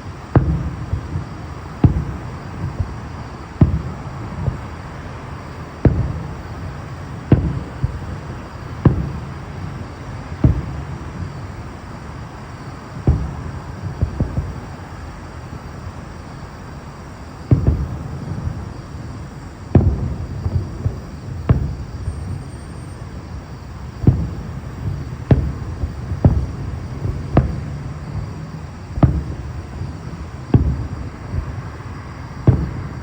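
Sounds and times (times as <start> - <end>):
fireworks bursting with deep booms: 0.0 - 33.0.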